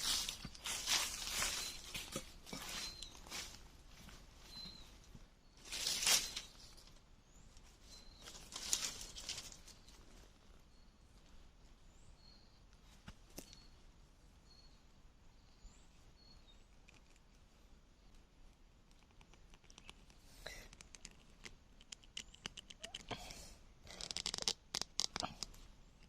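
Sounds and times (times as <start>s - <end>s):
faint high bird chirps: 0.0s - 3.6s, 4.4s - 17.4s.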